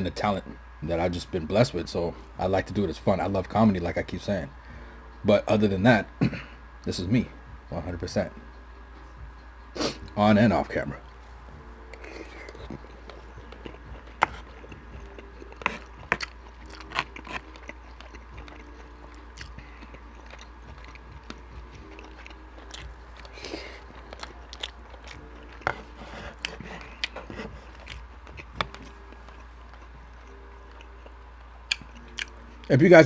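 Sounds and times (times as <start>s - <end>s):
close chewing with wet smacks: 11.9s - 32.7s.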